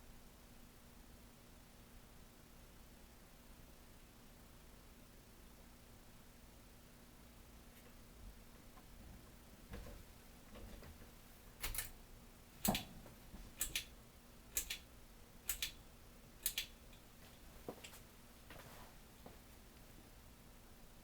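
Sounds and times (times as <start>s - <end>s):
ceiling fan hum: 0.0s - 21.0s
ceiling fan double clicks: 11.6s - 12.0s, 12.6s - 15.8s, 16.4s - 17.1s.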